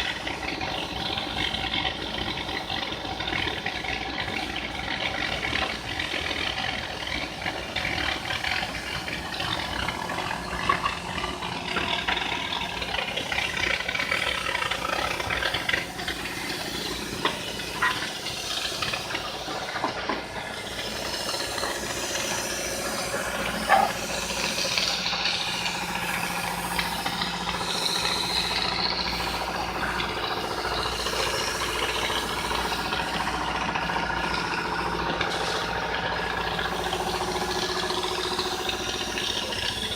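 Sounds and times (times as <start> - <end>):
plasma cutting torch hissing: 13.4 - 33.4.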